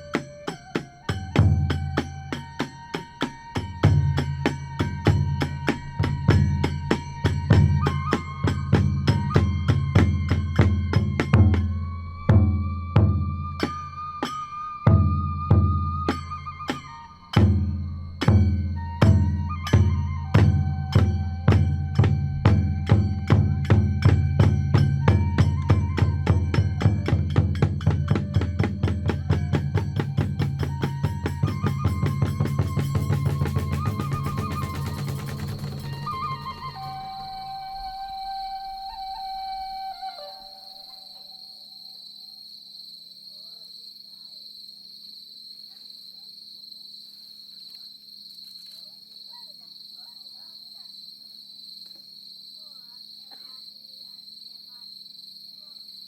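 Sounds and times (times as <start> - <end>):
small hand cymbals: 0.0 - 12.2, 13.4 - 15.3, 15.9 - 39.6
flute holding long notes: 0.0 - 27.4, 28.0 - 42.0
drum beating: 0.0 - 38.1
crickets chirping: 0.0 - 56.0.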